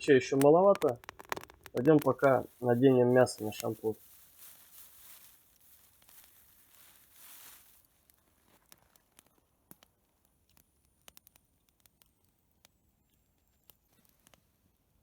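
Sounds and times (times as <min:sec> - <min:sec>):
faint clicks and ticks: 0:00.0 - 0:04.0, 0:07.8 - 0:14.7
soft hiss: 0:01.6 - 0:14.9.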